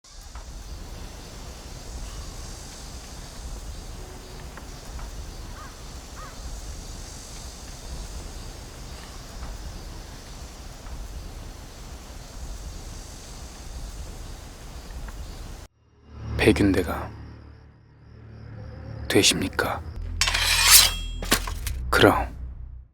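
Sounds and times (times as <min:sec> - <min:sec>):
faint bird calls: 0:01.4 - 0:10.8.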